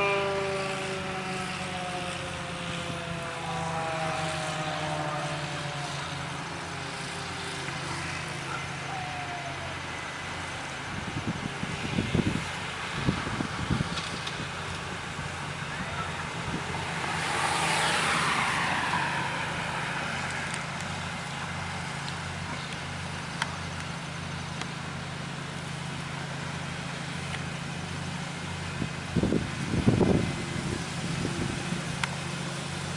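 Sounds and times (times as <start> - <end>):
wind gusts on microphone: 10.8 - 20.7, 28.7 - 32.0
car passing by: 11.6 - 22.7.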